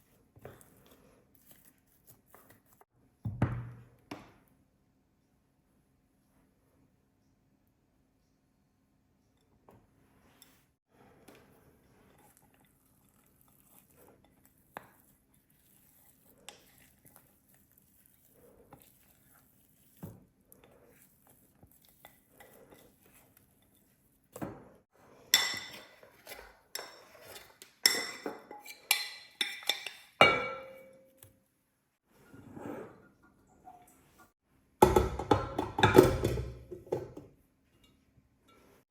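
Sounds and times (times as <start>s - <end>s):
dishes and utensils clattering: 25.3s - 31.1s, 34.8s - 38.8s.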